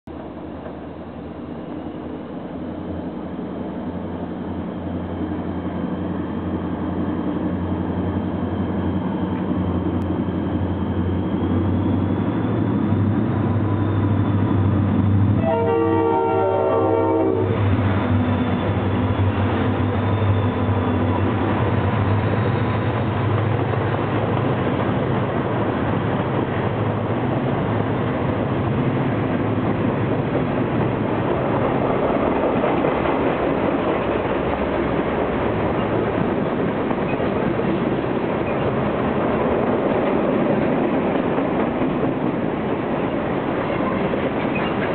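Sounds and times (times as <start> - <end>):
freight train rumbling past: 0.1 - 44.9
train horn blast: 15.4 - 17.6, 43.6 - 44.1.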